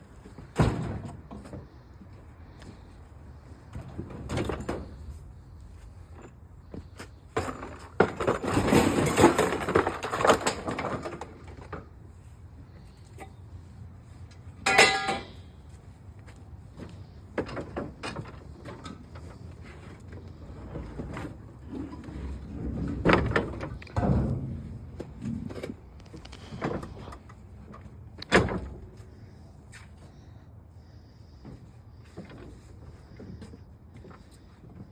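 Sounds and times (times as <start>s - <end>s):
scrap clattering and rustling: 2.6s - 12.0s, 14.6s - 15.5s.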